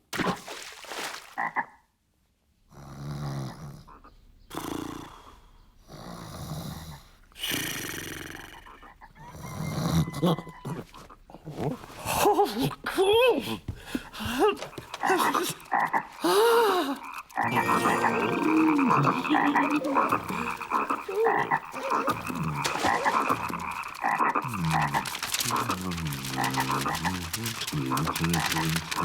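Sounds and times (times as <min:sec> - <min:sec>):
cartoon frogs croaking: 0:14.6 - 0:29.0.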